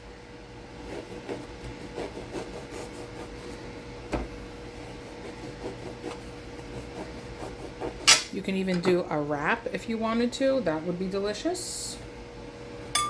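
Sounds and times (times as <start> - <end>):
knife sawing through bread: 0.7 - 8.3.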